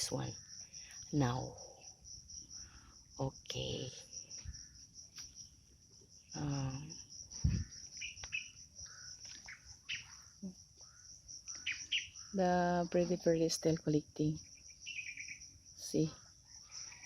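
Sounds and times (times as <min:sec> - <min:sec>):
insects buzzing: 0:00.0 - 0:17.0
bird chirps: 0:07.4 - 0:12.4, 0:14.5 - 0:15.5.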